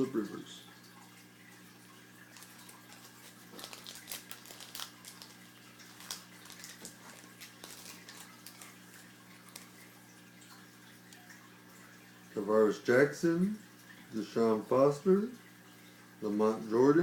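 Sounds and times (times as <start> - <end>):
faint electrical hum: 0.0 - 17.0
cards being handled: 2.3 - 9.8
foil card pack tearing: 2.3 - 9.8.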